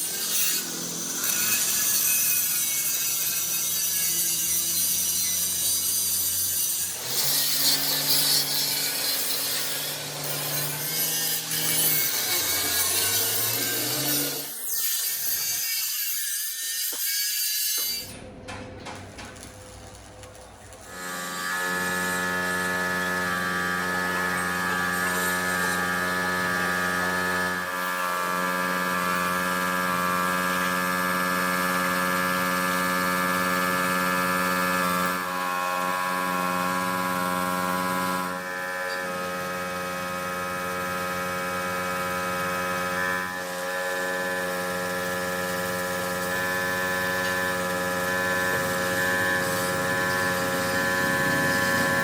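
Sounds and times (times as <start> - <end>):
loud machine hum: 21.2 - 52.0.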